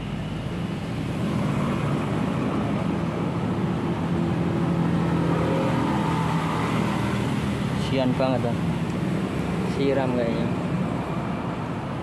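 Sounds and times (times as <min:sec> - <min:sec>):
traffic noise: 0:00.0 - 0:12.0.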